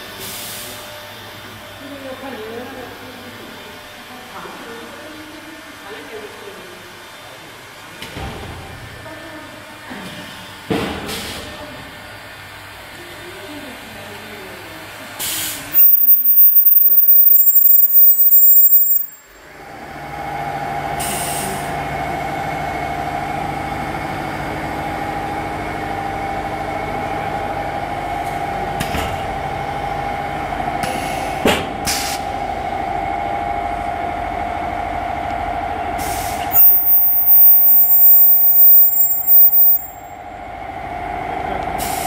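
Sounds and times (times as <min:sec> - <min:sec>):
welding machine whine: 0:15.7 - 0:19.4, 0:36.5 - 0:40.2.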